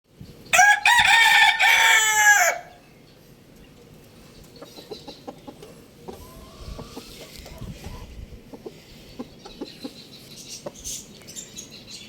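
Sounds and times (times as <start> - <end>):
rooster crowing: 0.5 - 2.8.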